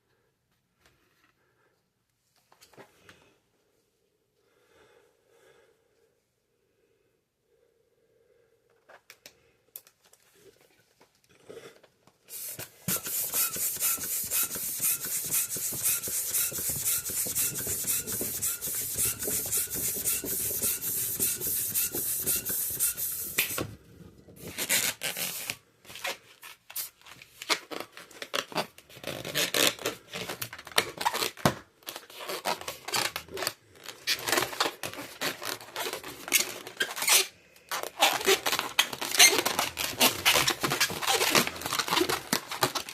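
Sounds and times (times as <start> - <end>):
balloon rubber squeaking: 12.3 - 23.7, 24.4 - 25.6, 27.5 - 42.9
pump rushing air: 12.3 - 23.8.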